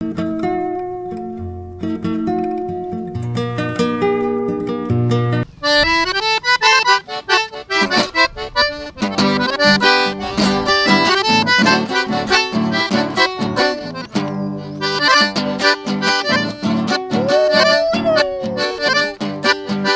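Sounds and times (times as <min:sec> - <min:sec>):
accordion lively melody: 0:05.5 - 0:19.9
rhythmic low accordion chords: 0:05.6 - 0:19.9.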